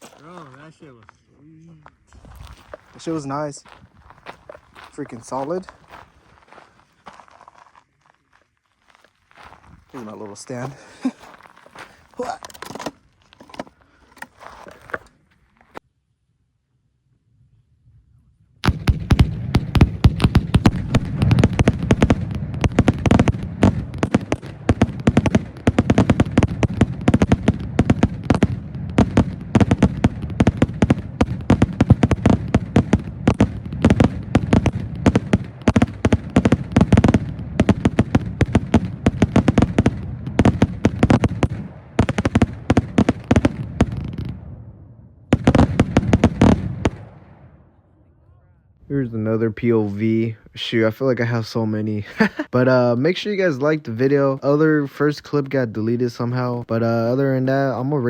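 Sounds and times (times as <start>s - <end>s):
firework bangs: 18.6s - 47.6s.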